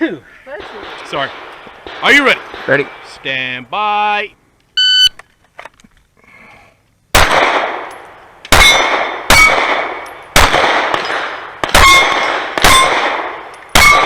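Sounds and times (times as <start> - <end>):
pistol shots: 0.6 - 3.4, 7.1 - 14.0.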